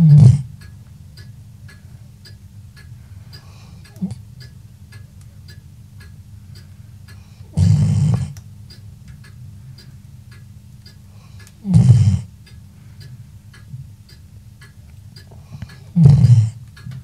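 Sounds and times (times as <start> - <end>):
dog snoring: 0.0 - 0.5, 7.5 - 8.4, 11.6 - 12.3, 15.8 - 16.6
dog snorting: 0.0 - 0.5, 3.9 - 4.2, 7.5 - 8.4, 11.6 - 12.3, 15.7 - 16.6
steady ticking: 0.0 - 17.0.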